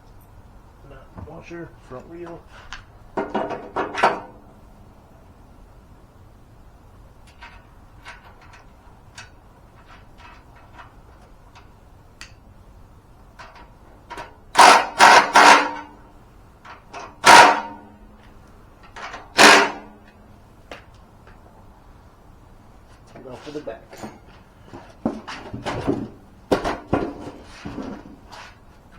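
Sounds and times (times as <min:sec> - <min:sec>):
light metal clicks and taps: 0:07.2 - 0:12.4
loud short metallic bursts: 0:14.5 - 0:16.0, 0:17.1 - 0:18.1, 0:19.3 - 0:20.0.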